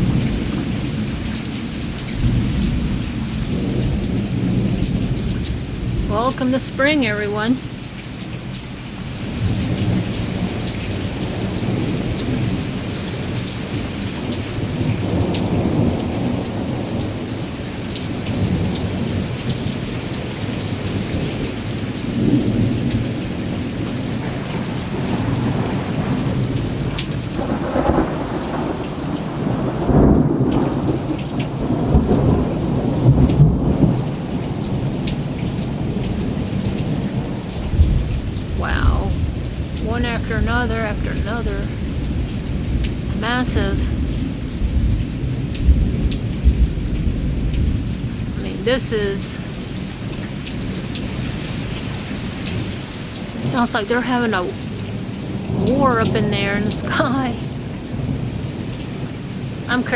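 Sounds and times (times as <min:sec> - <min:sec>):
thunder rumbling: 0:22.1 - 0:53.9.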